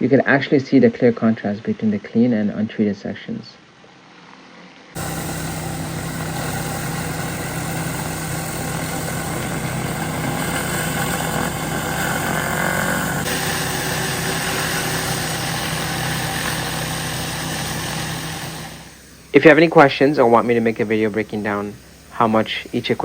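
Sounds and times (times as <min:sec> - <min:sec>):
high-pressure water hissing: 0:05.0 - 0:23.0
pressure washer engine running: 0:05.0 - 0:23.0.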